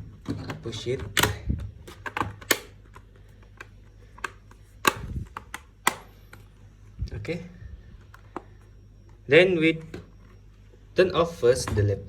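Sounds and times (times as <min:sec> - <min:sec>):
plastic clips snapping into place: 0:00.3 - 0:06.4.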